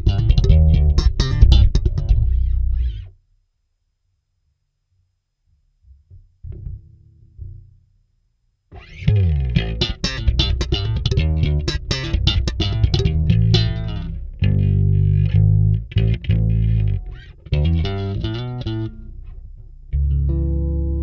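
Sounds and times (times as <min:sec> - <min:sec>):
electric bass notes: 0:00.0 - 0:03.1, 0:08.8 - 0:21.0.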